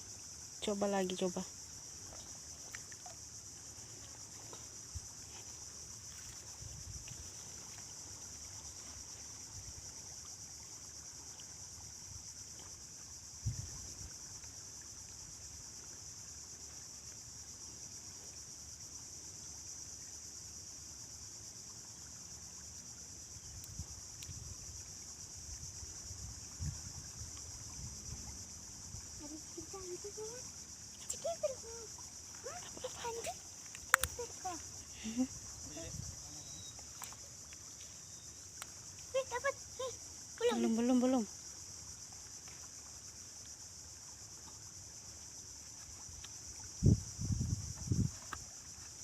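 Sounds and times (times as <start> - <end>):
wind rumble on microphone: 6.5 - 7.2, 13.4 - 14.1, 23.5 - 29.4, 35.3 - 36.3, 46.7 - 48.4
high-pitched insect drone: 19.8 - 42.6.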